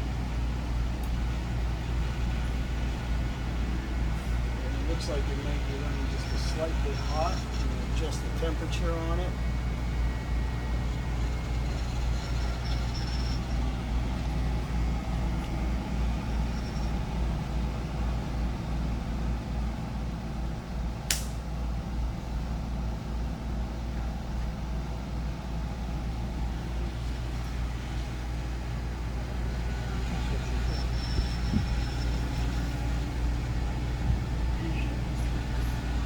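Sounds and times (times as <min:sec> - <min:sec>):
motors and fans humming: 0:00.0 - 0:36.0
sharp click: 0:21.1 - 0:21.4.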